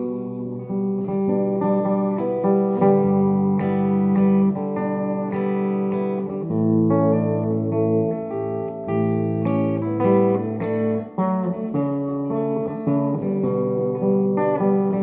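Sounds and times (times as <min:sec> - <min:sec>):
guitar chords and notes: 0:00.0 - 0:15.0.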